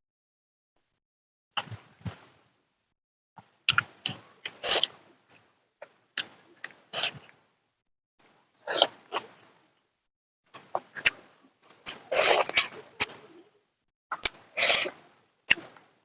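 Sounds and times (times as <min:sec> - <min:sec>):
biting and chewing: 0:08.7 - 0:09.4, 0:10.5 - 0:13.2, 0:14.1 - 0:15.9.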